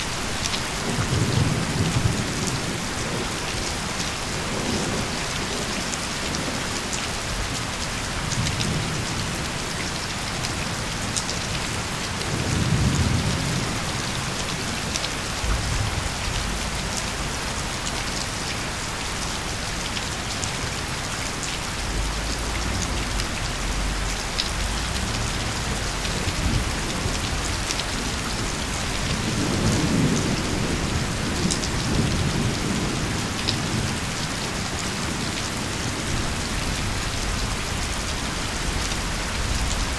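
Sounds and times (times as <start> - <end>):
heavy rain falling: 0.0 - 39.9
distant thunder rumbling: 11.6 - 39.9.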